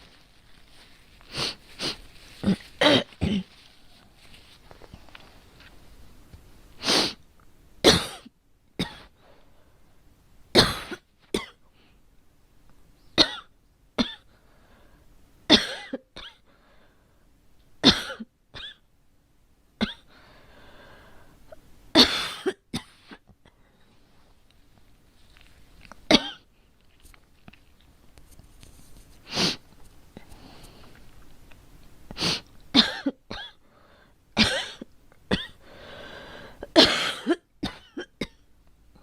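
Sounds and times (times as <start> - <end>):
girl coughing: 2.4 - 3.6, 7.9 - 9.1, 10.6 - 11.5, 15.5 - 16.4, 17.8 - 18.8, 22.0 - 23.2, 32.8 - 33.6, 34.4 - 35.6, 36.7 - 38.4.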